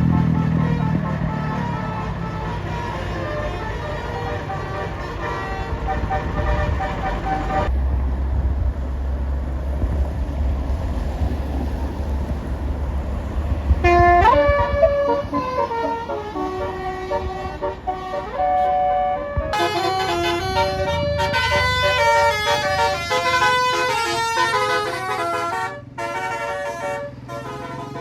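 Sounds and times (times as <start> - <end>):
multi-tone musical bus horn: 0.0 - 7.7, 13.7 - 28.0
bus engine low rumble: 0.0 - 28.0.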